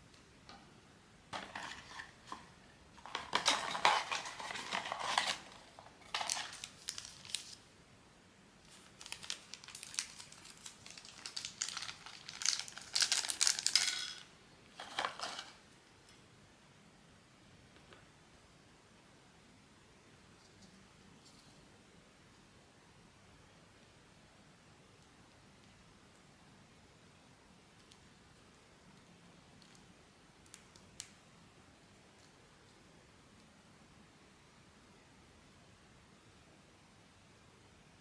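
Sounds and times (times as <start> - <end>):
plastic packaging crinkling: 1.4 - 2.4, 3.0 - 7.7, 8.7 - 15.6.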